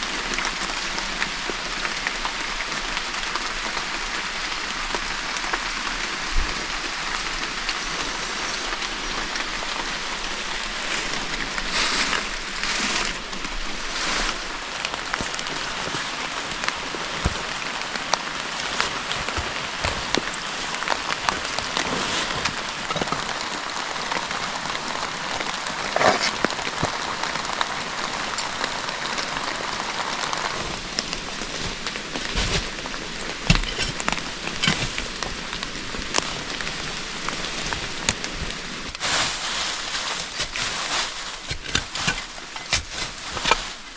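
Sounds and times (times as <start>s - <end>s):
forest ambience hiss: 0.0s - 43.9s
wooden branches knocking and snapping: 7.4s - 16.0s, 37.6s - 43.9s.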